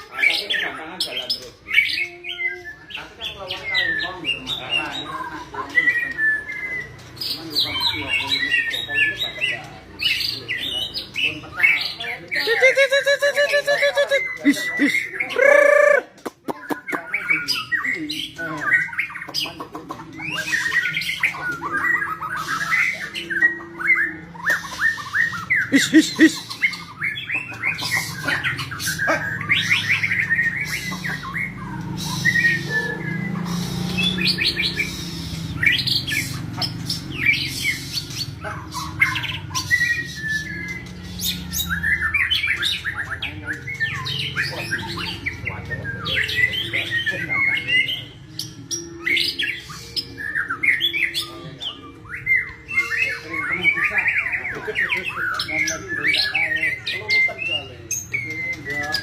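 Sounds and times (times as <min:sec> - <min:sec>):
bird singing chattering phrases: 0:00.0 - 0:59.0.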